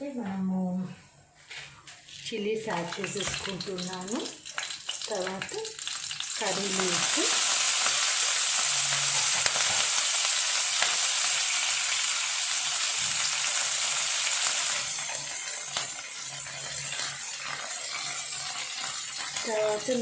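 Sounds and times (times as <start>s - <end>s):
spices sizzling in hot oil: 2.2s - 20.0s.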